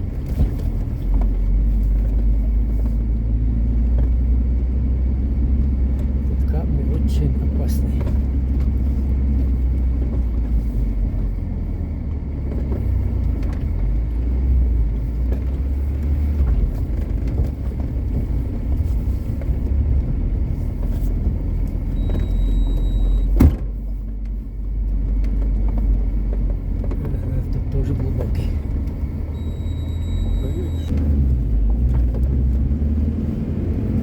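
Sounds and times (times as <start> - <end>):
car engine rumbling in low gear: 0.0 - 34.0.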